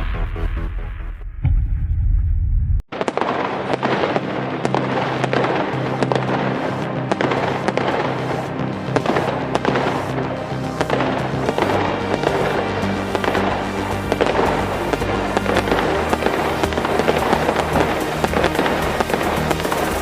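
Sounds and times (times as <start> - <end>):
fireworks popping and crackling: 2.9 - 20.0
music with bass line: 4.9 - 20.0.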